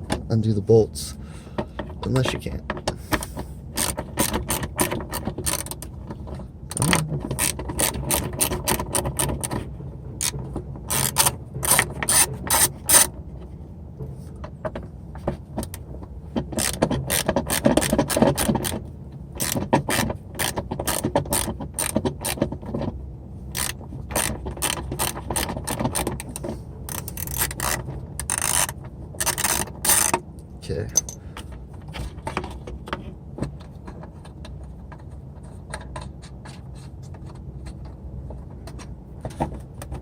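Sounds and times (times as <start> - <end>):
socket ratchet clicking: 10.9 - 13.1, 23.6 - 30.2.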